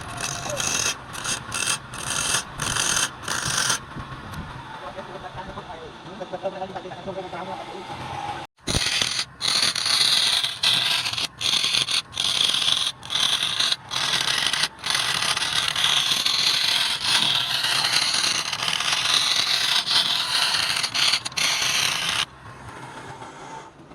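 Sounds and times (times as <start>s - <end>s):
tool scraping wood on lathe: 0.0s - 3.9s, 8.6s - 22.3s.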